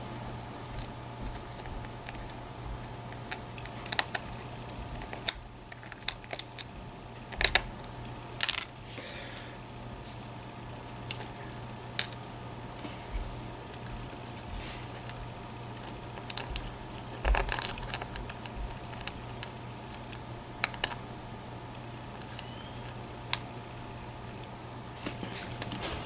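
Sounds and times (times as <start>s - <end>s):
small metal parts clicking: 5.0s - 6.7s.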